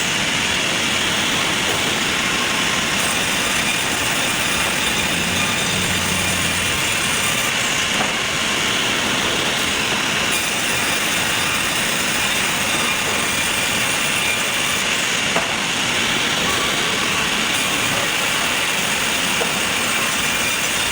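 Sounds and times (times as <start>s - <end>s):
sawmill machinery running: 2.3s - 8.2s.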